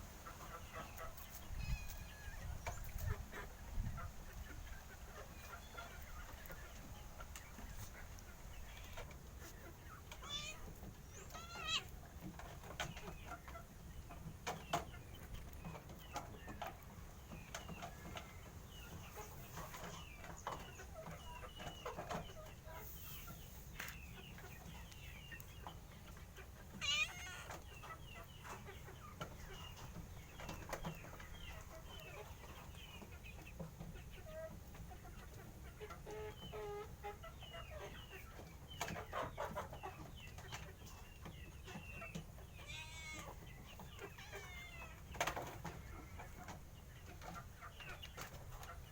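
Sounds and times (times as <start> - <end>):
chickens clucking: 0.0 - 48.9.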